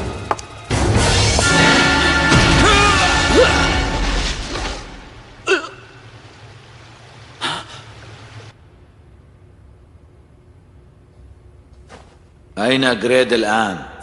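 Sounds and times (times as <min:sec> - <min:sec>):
dramatic cartoon music: 0:00.0 - 0:05.1.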